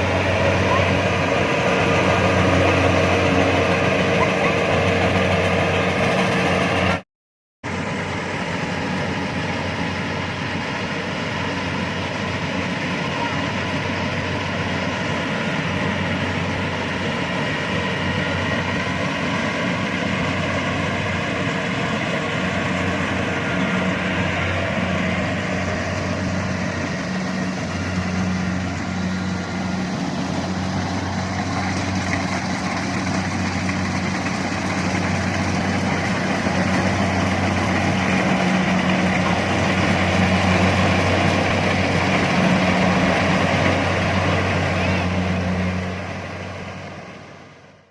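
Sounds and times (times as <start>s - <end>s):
diesel engine running: 0.0s - 7.0s, 7.6s - 47.9s
threshing machinery: 24.5s - 46.8s.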